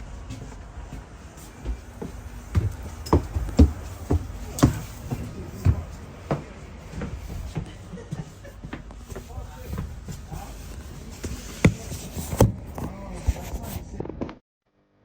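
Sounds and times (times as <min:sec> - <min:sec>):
steady low rumble: 0:00.0 - 0:11.9.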